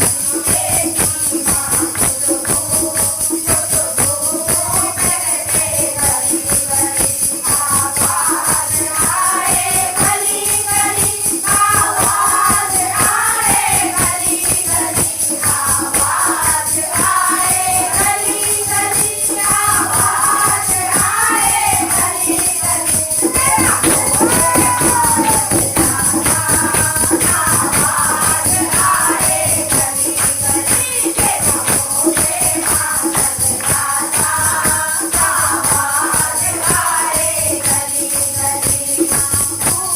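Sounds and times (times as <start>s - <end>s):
group singing devotional song: 0.0s - 39.9s
jingling tambourine: 0.0s - 39.9s
fast dense drum beat: 5.8s - 36.8s.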